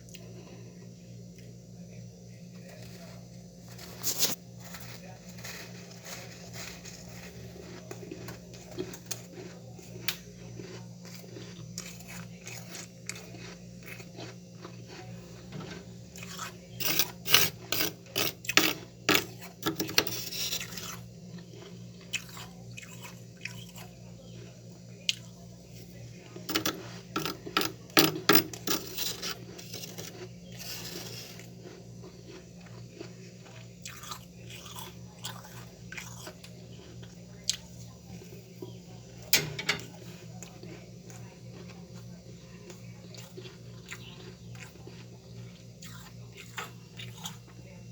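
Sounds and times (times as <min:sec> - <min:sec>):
steady low hum: 0:00.0 - 0:47.9
crunching frost: 0:02.5 - 0:47.2.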